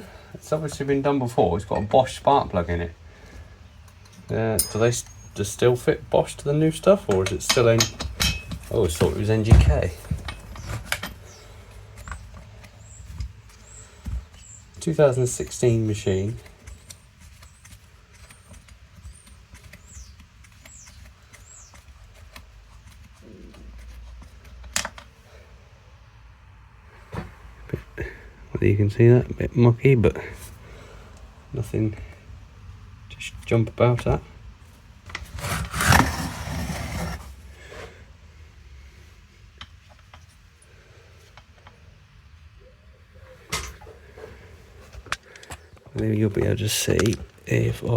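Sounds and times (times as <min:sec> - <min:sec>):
hands handling parts on workbench: 0:06.8 - 0:25.2, 0:35.0 - 0:37.9.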